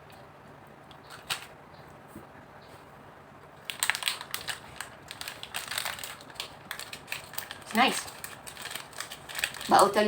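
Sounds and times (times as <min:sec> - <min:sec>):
plastic packaging crinkling: 0:03.6 - 0:10.0.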